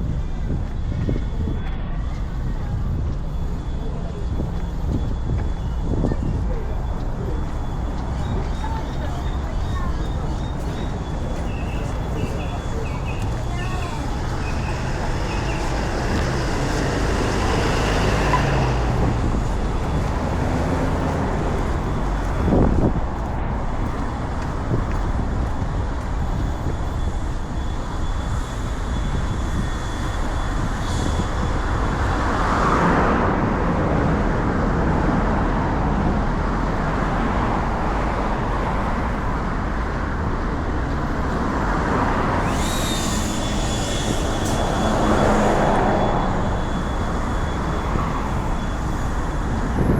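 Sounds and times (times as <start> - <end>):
cars passing: 0.0 - 49.9
high-pitched squeal: 1.8 - 25.0, 41.6 - 49.9.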